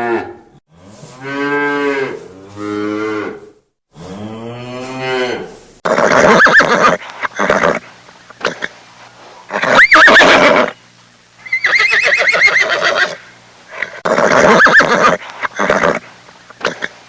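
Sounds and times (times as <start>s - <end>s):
horse whinnying: 5.8s - 7.8s, 9.5s - 10.8s, 11.4s - 13.2s, 13.8s - 17.0s.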